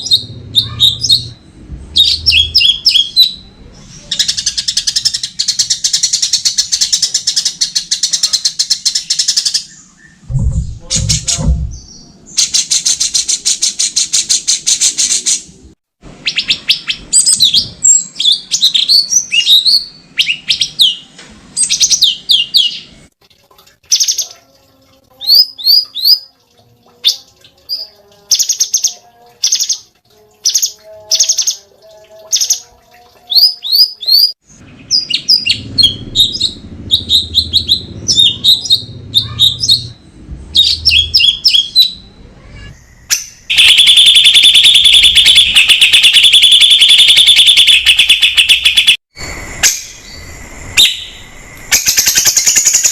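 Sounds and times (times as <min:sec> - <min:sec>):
low rumbling noise: 0:00.0 - 0:04.0, 0:10.2 - 0:12.4, 0:34.4 - 0:43.5, 0:49.1 - 0:51.8
bird singing trills and whistles: 0:00.0 - 0:15.4, 0:16.2 - 0:22.9, 0:25.2 - 0:26.3, 0:33.3 - 0:42.1, 0:43.1 - 0:49.0, 0:49.6 - 0:52.9.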